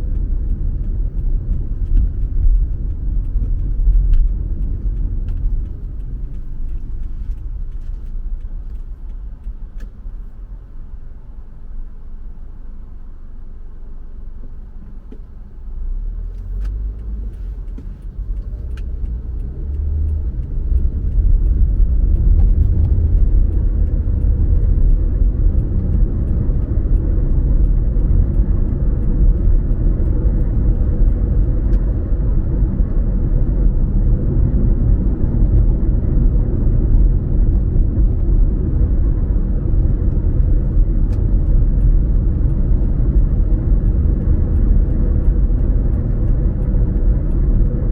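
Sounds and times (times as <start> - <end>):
faint ticks: 0.0 - 10.3, 16.2 - 32.0, 38.2 - 47.9
car driving on road: 0.0 - 47.9.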